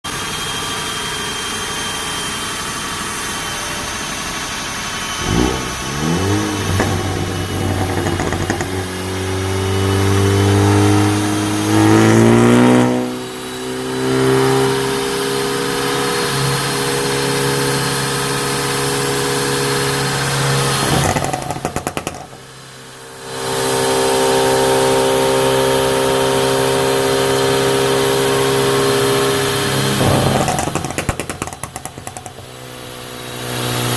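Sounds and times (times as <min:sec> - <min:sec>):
car engine revving: 0:05.0 - 0:33.9
exhaust crackles and pops: 0:05.2 - 0:09.4, 0:20.8 - 0:22.6, 0:29.6 - 0:33.0.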